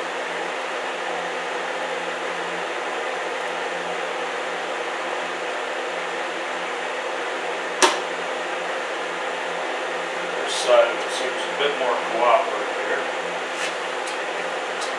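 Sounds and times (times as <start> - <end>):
sharp click: 7.8 - 8.1.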